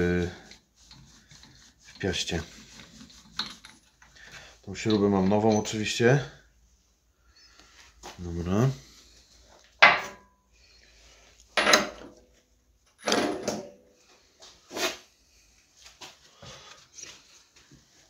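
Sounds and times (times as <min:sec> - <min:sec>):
tools rattling: 0:02.9 - 0:06.0, 0:11.6 - 0:12.2, 0:12.9 - 0:13.8.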